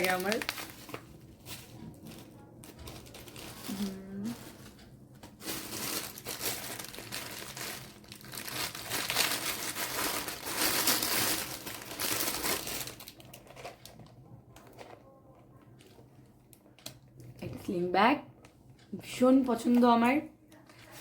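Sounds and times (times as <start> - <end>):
gift wrapping crumpling and crinkling: 0.0 - 15.2, 20.6 - 21.0.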